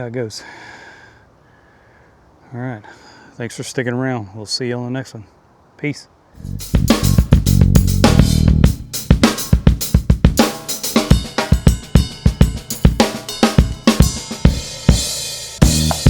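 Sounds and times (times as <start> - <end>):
music with driving drum kit: 6.4 - 16.0.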